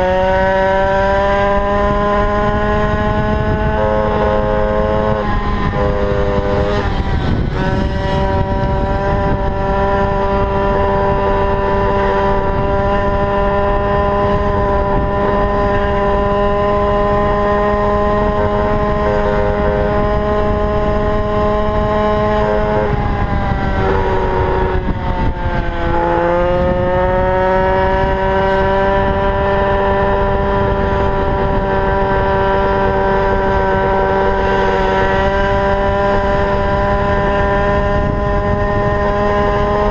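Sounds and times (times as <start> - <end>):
two-stroke engine running hard: 0.0 - 39.9.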